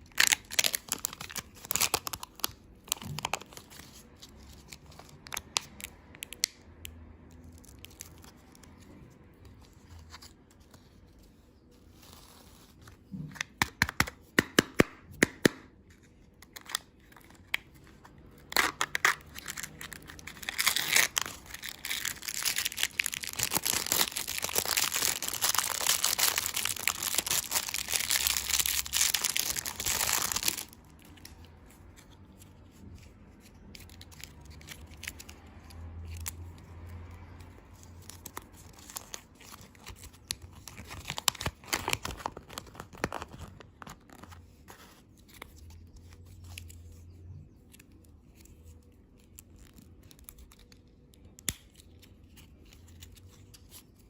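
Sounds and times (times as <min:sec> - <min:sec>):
plastic packaging crinkling: 0:00.0 - 0:06.6, 0:16.2 - 0:32.1, 0:37.8 - 0:46.5.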